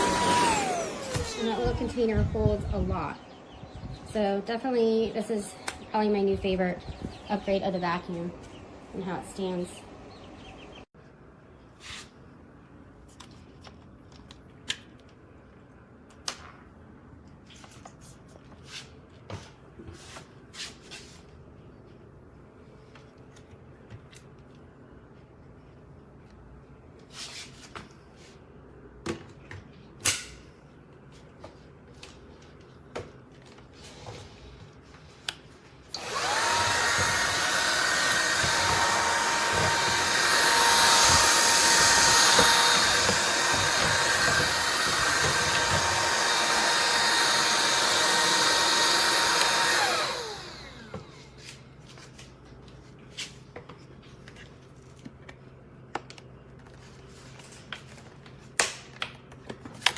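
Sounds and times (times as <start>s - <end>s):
vacuum motor whining: 0.0s - 7.7s, 35.9s - 51.4s.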